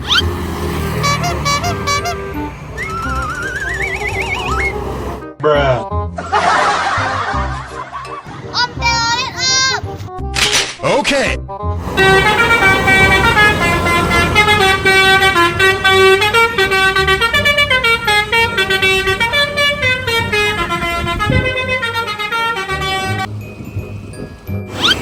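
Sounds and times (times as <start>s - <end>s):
musical bus air horn: 0.0s - 5.3s, 11.8s - 25.0s.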